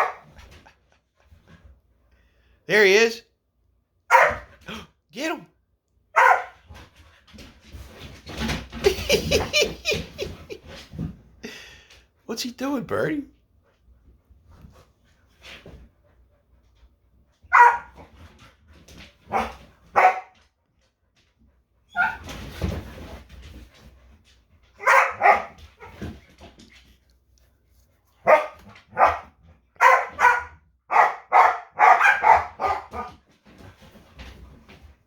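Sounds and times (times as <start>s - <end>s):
dogs barking: 0.0s - 0.2s, 4.1s - 4.5s, 6.2s - 6.6s, 17.5s - 18.0s, 19.3s - 20.3s, 24.8s - 25.9s, 28.2s - 33.1s.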